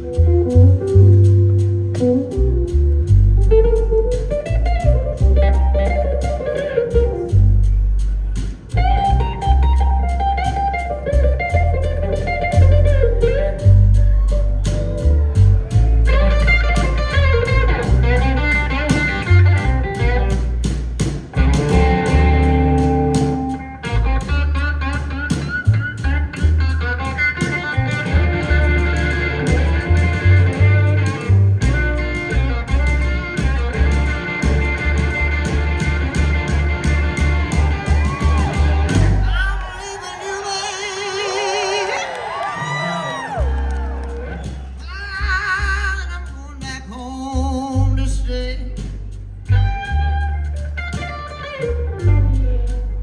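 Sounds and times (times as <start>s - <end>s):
electric guitar with bent notes: 0.0s - 40.3s, 48.3s - 53.0s
blues band playing: 0.0s - 53.0s
crowd shouting: 37.4s - 44.8s.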